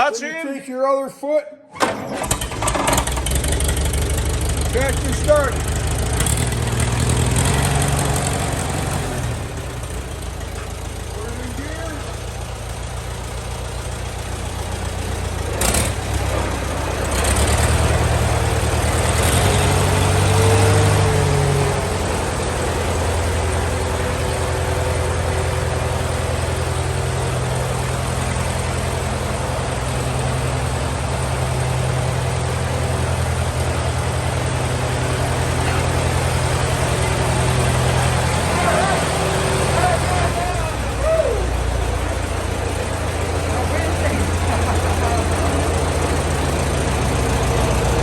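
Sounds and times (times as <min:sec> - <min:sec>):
tractor engine idling: 0:01.8 - 0:48.0.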